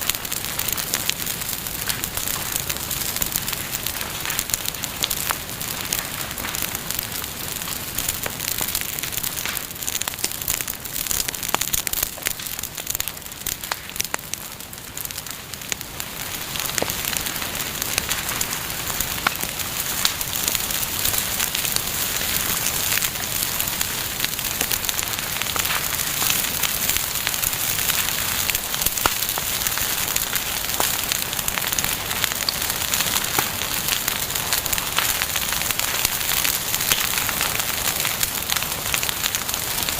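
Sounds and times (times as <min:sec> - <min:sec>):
bonfire crackling and popping: 0:00.0 - 0:39.9.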